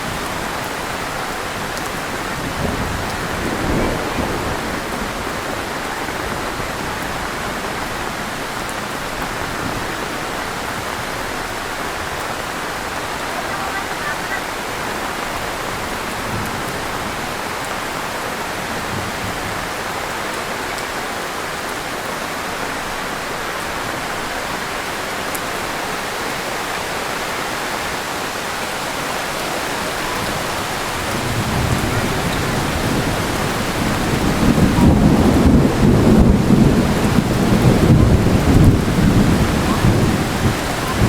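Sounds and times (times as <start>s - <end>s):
thunder rumbling: 0.0s - 17.5s, 29.3s - 41.0s
heavy rain falling: 0.0s - 41.0s.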